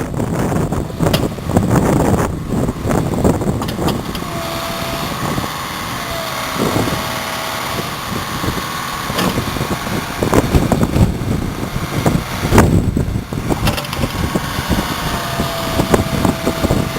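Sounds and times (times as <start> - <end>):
diesel engine running: 0.0 - 16.9
knocks and clanks: 13.5 - 14.2.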